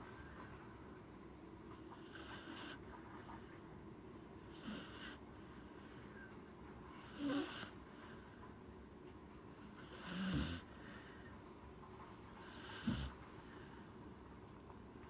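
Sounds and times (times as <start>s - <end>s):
dog snoring: 1.8s - 3.6s, 4.4s - 5.8s, 7.0s - 8.3s, 9.8s - 11.3s, 12.4s - 13.9s.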